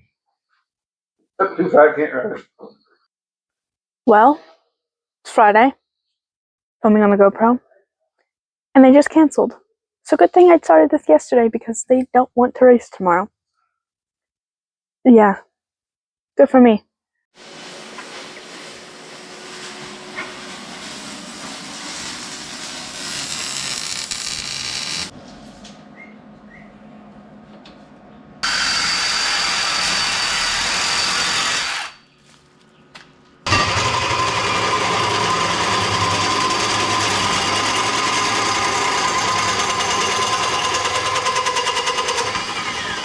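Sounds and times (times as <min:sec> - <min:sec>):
small gasoline engine running: 0:33.5 - 0:43.0.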